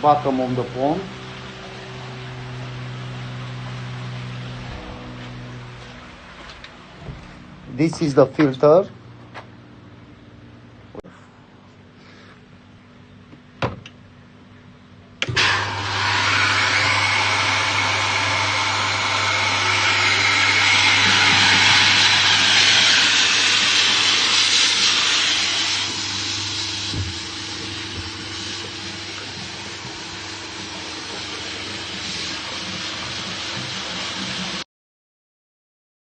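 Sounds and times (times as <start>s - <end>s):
motor hum: 0.0s - 34.6s
spray jets hissing: 15.4s - 34.6s.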